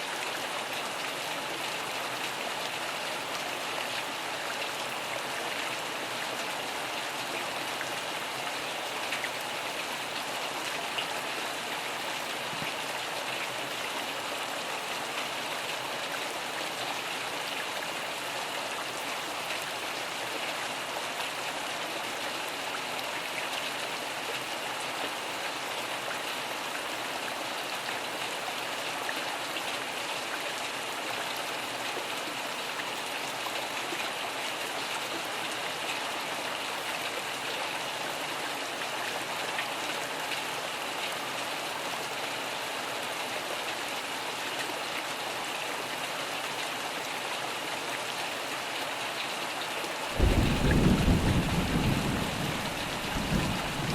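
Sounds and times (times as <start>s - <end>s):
steady rain: 0.0s - 53.9s.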